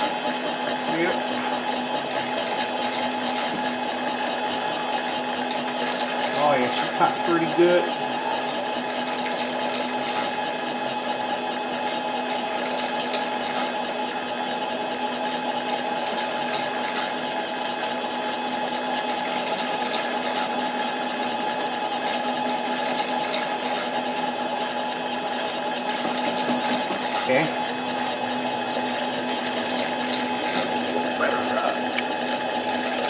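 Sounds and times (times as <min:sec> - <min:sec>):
faint cutting scratching: 0:00.0 - 0:33.0
lathe motor hum and whine: 0:00.0 - 0:33.0.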